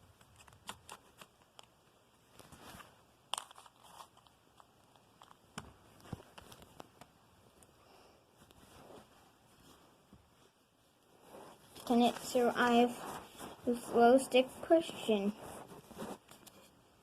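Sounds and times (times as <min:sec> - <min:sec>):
crackly rustles of slime: 0:00.0 - 0:07.2, 0:11.2 - 0:16.5.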